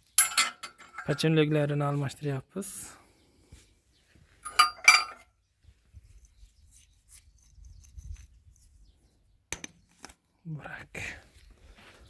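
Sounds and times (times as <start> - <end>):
metal clinks: 0.2 - 1.3, 4.4 - 5.3.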